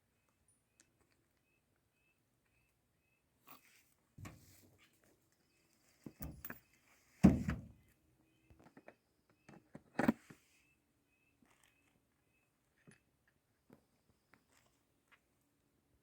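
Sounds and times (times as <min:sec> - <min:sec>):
clunks and knocks of parts: 0:04.2 - 0:04.8, 0:06.0 - 0:07.8.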